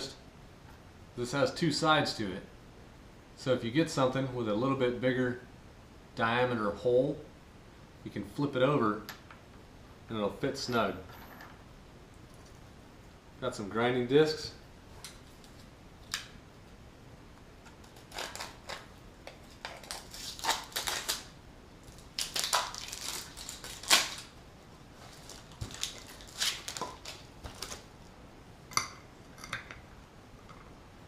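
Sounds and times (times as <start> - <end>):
packaging rustling: 17.8 - 28.0.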